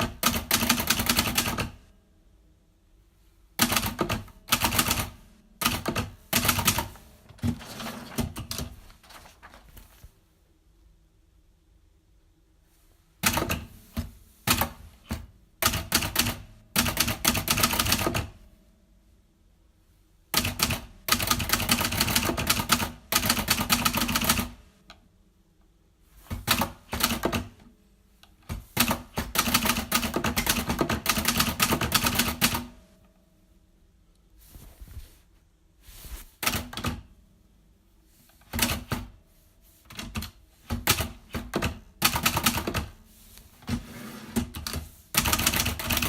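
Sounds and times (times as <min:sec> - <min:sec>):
typewriter keys clicking: 0:00.0 - 0:01.8, 0:14.5 - 0:18.3, 0:20.4 - 0:24.6, 0:28.5 - 0:32.7, 0:39.9 - 0:43.0, 0:44.4 - 0:46.0.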